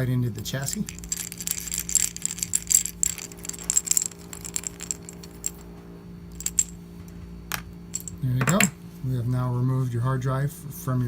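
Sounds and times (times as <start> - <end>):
steady low hum: 0.0 - 11.0
small metallic clicks and clinks: 0.7 - 5.7, 7.5 - 8.8.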